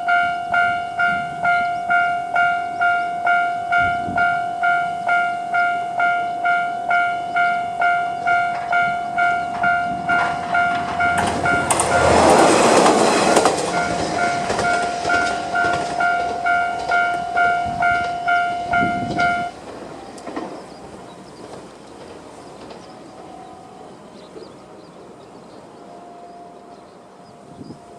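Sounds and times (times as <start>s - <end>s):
level crossing warning bell: 0.0s - 20.3s
diesel railcar rushing past: 0.0s - 27.9s.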